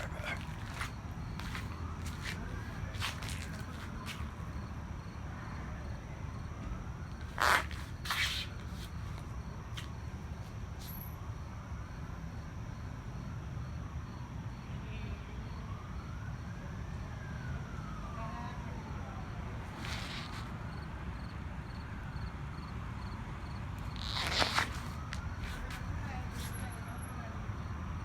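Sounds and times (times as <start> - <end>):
distant siren wailing: 0.0 - 28.0.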